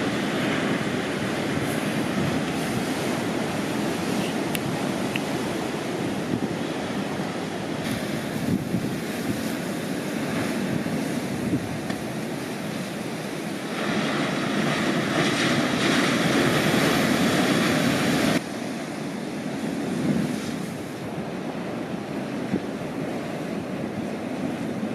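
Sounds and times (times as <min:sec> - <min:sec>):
wind buffeting microphone: 0:00.0 - 0:18.4
surf breaking and washing in: 0:00.0 - 0:24.9.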